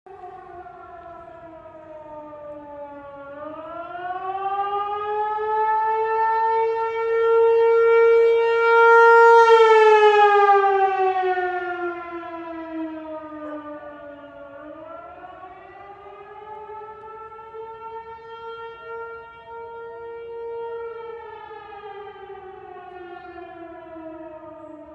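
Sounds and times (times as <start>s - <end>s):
warning siren wailing: 0.1s - 24.9s.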